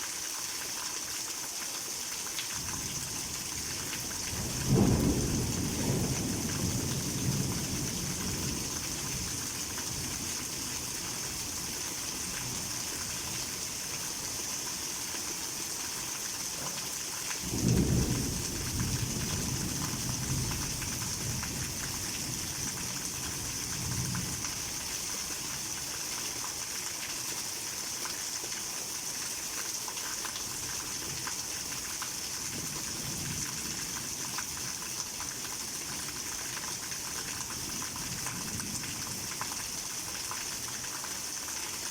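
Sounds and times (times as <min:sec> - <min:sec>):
heavy rain falling: 0:00.2 - 0:41.9
thunder rumbling: 0:04.4 - 0:08.7.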